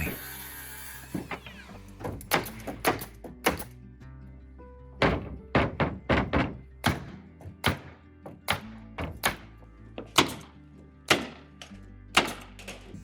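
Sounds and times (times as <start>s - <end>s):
background music: 0.0s - 13.0s
nails hammered into plywood: 2.0s - 3.8s, 5.0s - 13.0s.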